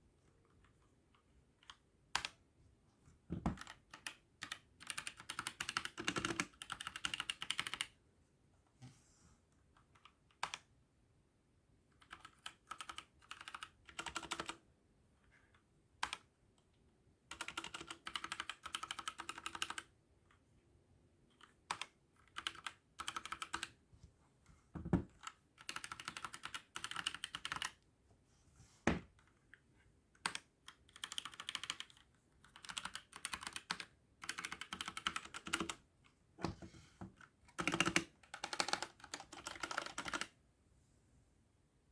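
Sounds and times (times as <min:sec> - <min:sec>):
mechanical keyboard typing: 0:01.6 - 0:02.4, 0:03.5 - 0:07.9, 0:09.9 - 0:10.7, 0:12.0 - 0:14.6, 0:16.0 - 0:16.2, 0:17.3 - 0:19.9, 0:21.4 - 0:23.7, 0:25.2 - 0:27.8, 0:30.2 - 0:35.8, 0:37.5 - 0:40.3.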